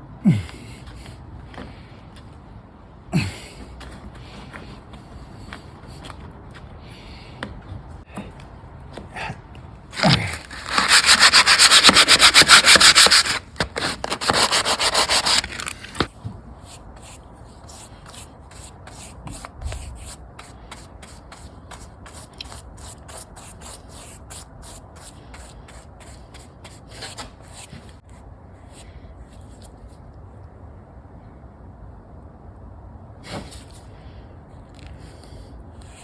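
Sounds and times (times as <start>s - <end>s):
oscillating multi-tool cutting wood: 10.5s - 16.0s
rubbing strokes: 10.5s - 16.1s.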